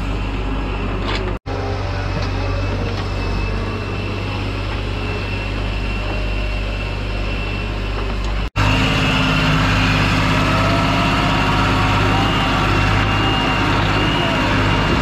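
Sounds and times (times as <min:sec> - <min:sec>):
tractor engine running: 0:00.0 - 0:15.0.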